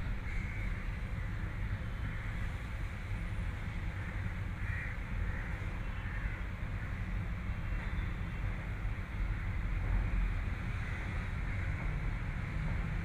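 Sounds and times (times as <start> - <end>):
steady low rumble: 0.0 - 13.0
crow cawing: 0.2 - 0.7, 4.0 - 6.4.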